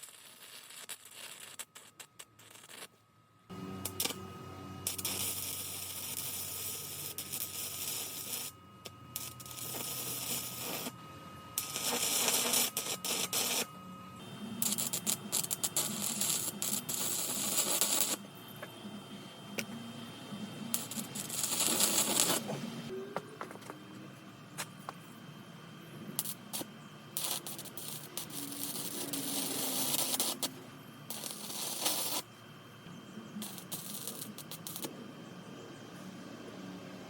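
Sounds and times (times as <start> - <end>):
welding arc crackling: 0.0 - 11.0, 11.6 - 18.3, 20.7 - 22.6, 26.1 - 32.3, 33.4 - 34.9.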